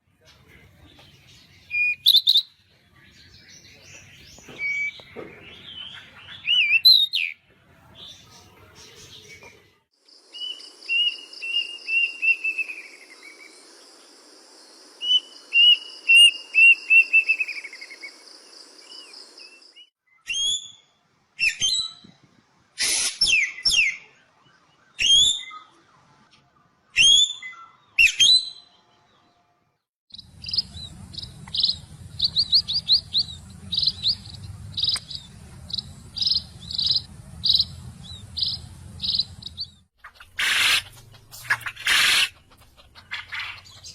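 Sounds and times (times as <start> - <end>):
bird rapid repeated notes: 30.1 - 43.9
bird sharp sweeping calls: 30.1 - 43.9
low hum: 30.2 - 39.9.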